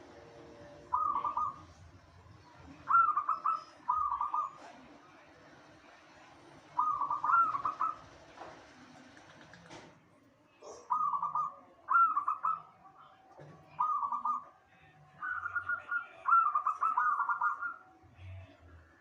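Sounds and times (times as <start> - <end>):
dove cooing: 0.0 - 4.8, 6.8 - 8.2, 10.6 - 14.6, 15.2 - 17.9.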